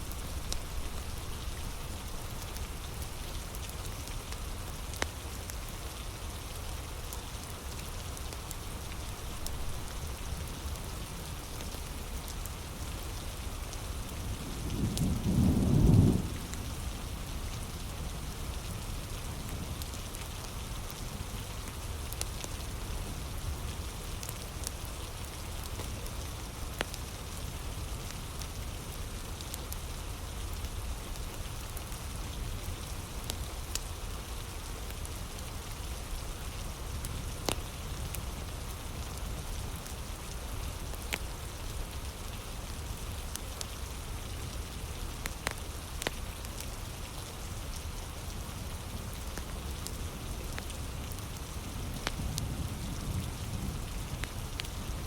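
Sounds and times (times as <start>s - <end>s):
low rumble of thunder: 0.0s - 3.4s, 14.2s - 19.8s, 51.7s - 55.0s
wood fire crackling: 0.0s - 5.6s, 7.0s - 13.7s, 23.5s - 52.5s, 53.6s - 55.0s
heavy rain: 0.0s - 55.0s.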